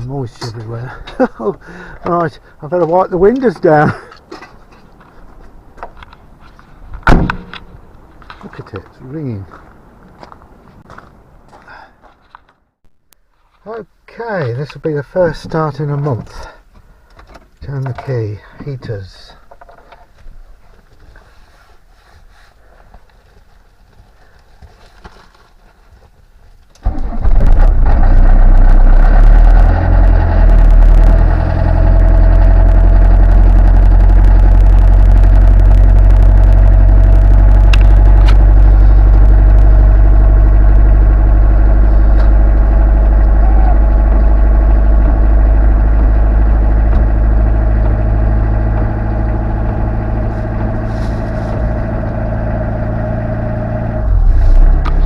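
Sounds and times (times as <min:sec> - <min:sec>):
diesel engine starting and idling: 0:26.8 - 0:55.0.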